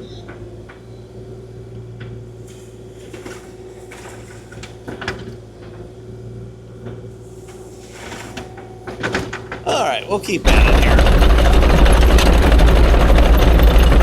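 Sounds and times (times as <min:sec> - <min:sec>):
excavator diesel engine humming: 0:09.7 - 0:14.0
machine knocks and clunks: 0:10.5 - 0:14.0.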